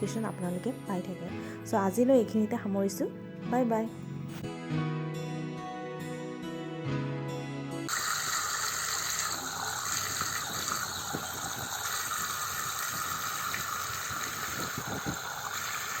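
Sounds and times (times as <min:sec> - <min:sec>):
fountain water splashing and trickling: 0:07.9 - 0:16.0.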